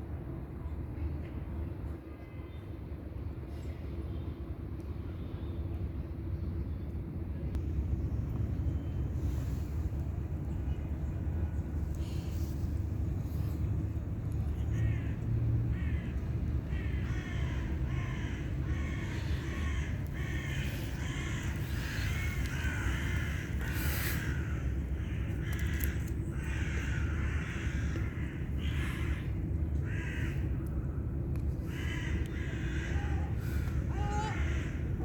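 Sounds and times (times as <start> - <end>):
background traffic rumble: 0.0 - 35.0
crow cawing: 14.7 - 30.4, 31.7 - 34.8.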